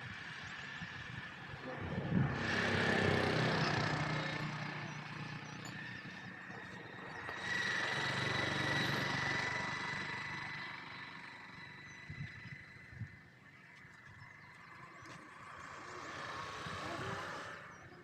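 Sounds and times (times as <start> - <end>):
vehicle engine running: 0.0 - 18.0.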